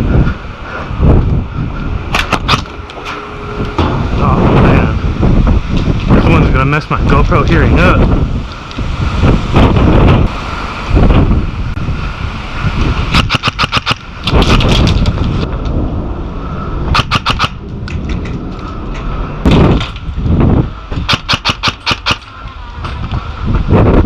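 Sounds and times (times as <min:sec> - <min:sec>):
wind buffeting microphone: 0:00.0 - 0:24.0
airsoft rifle rapid bursts: 0:13.2 - 0:14.6, 0:17.0 - 0:17.6, 0:21.1 - 0:22.2.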